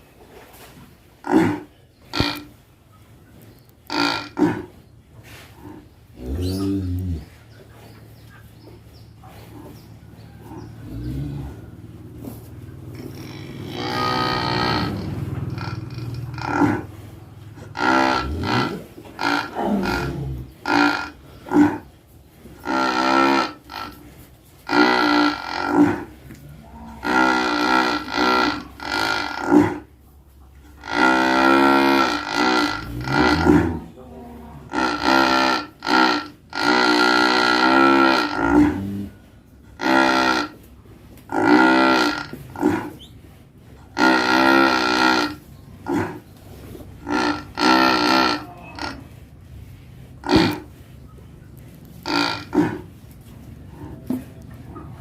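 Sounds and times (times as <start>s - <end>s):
cow snoring: 9.4s - 21.9s, 22.5s - 30.0s, 30.8s - 34.0s, 34.6s - 50.8s, 51.6s - 55.0s.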